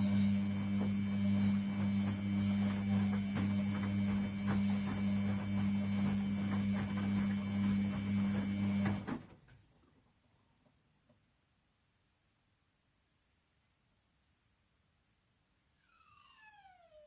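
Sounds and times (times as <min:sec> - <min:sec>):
washing machine humming: 0:00.0 - 0:09.6.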